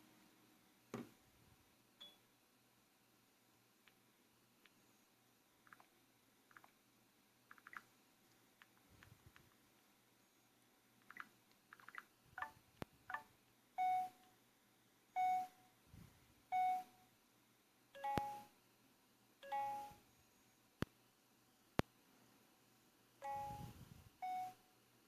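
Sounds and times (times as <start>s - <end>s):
faint electronic ticks and blips: 5.6s - 6.8s, 7.5s - 7.9s, 11.0s - 14.4s, 18.0s - 18.6s, 19.4s - 20.1s, 23.2s - 24.7s
sharp electronic clicks: 7.5s - 7.9s, 11.0s - 13.3s.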